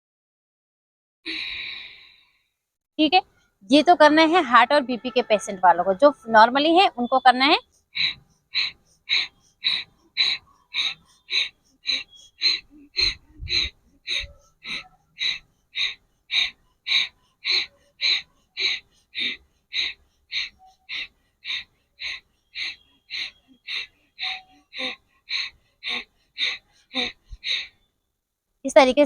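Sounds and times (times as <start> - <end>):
forceful breaths through nose: 1.3 - 2.4, 7.6 - 28.0.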